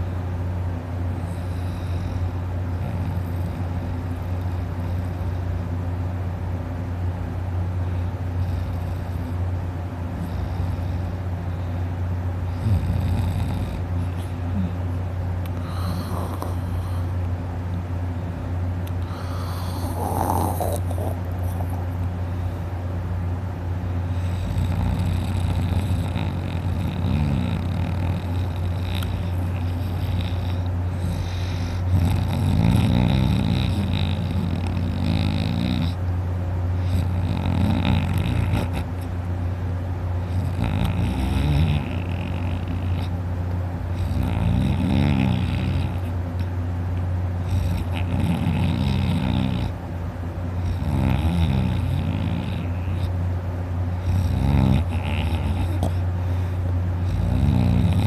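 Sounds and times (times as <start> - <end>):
steady low hum: 0.0 - 58.0
man snoring: 1.2 - 5.3, 12.5 - 14.8, 15.6 - 17.2, 19.0 - 21.9, 24.1 - 36.0, 36.8 - 39.0, 40.2 - 43.2, 43.9 - 46.1, 47.4 - 49.8, 50.6 - 53.1, 54.0 - 56.0, 57.0 - 58.0.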